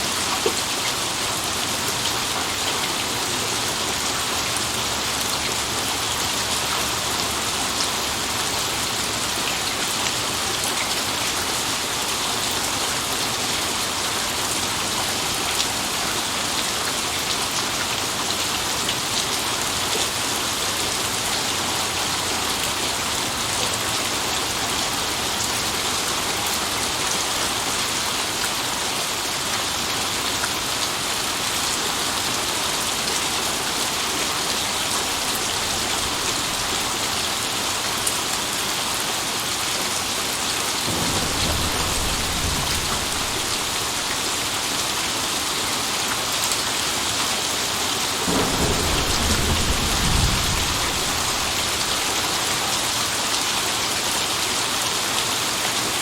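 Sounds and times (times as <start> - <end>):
heavy rain hissing: 7.3 - 46.9, 47.6 - 53.8
thunder rumbling: 33.2 - 38.3, 40.8 - 45.0, 48.2 - 52.6.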